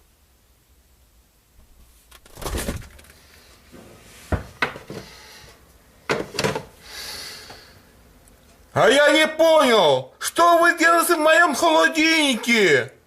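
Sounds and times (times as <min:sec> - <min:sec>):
refrigerator door opening: 0:02.2 - 0:03.1
items clattering and clicking: 0:06.1 - 0:06.7.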